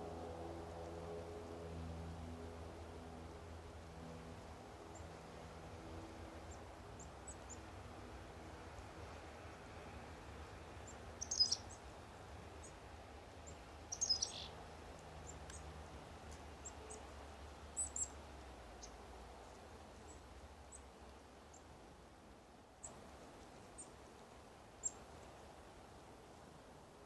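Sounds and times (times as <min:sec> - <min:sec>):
small songbirds chirping: 0:06.4 - 0:08.1, 0:10.4 - 0:20.9, 0:21.5 - 0:21.8, 0:22.8 - 0:25.7.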